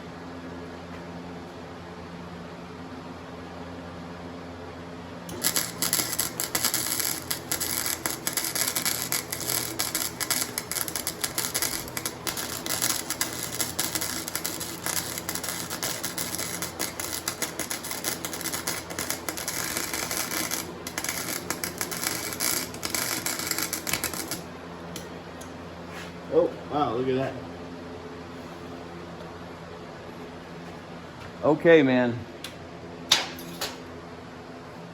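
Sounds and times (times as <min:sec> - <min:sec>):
steady hum: 0:00.0 - 0:34.9
welding arc crackling: 0:05.3 - 0:25.1.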